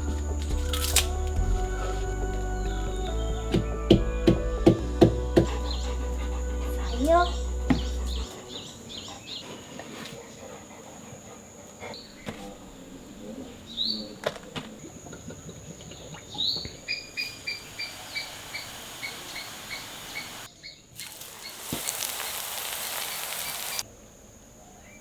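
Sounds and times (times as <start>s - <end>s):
bird calling: 16.3s - 20.5s
insect drone: 16.9s - 25.0s
loud steady hiss: 17.2s - 23.8s.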